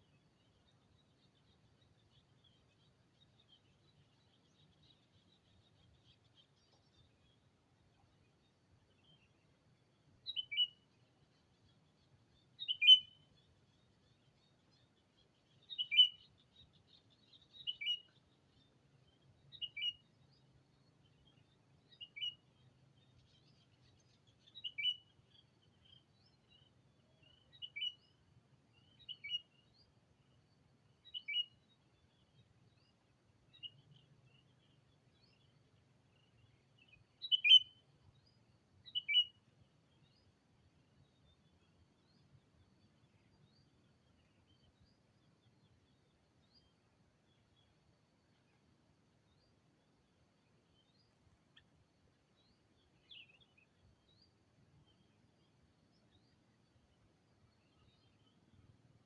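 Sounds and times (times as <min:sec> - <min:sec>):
bulbul calling: 0:37.2 - 0:37.7.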